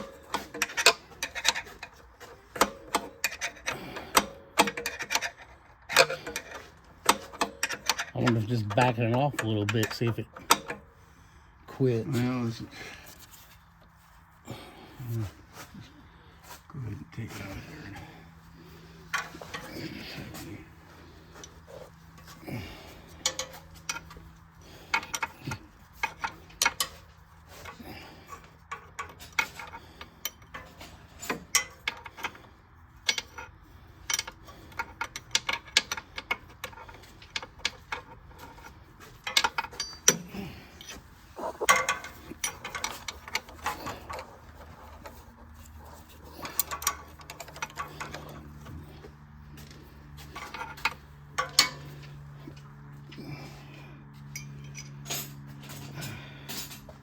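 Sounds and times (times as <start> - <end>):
metal tools clinking: 0.0 - 11.0, 17.2 - 57.0.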